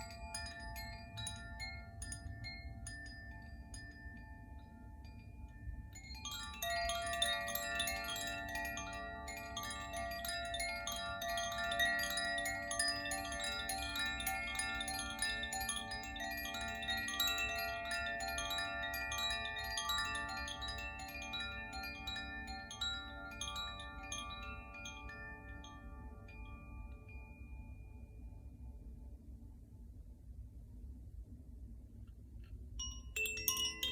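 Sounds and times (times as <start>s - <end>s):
wind chime ringing: 0.0s - 28.0s, 32.8s - 33.9s.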